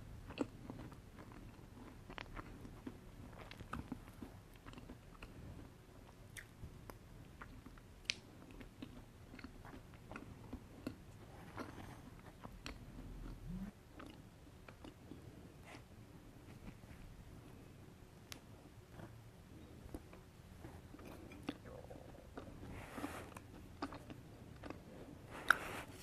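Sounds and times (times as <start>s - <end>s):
chewing soft cake: 0.0s - 26.0s
wet mouth clicks: 13.3s - 14.2s.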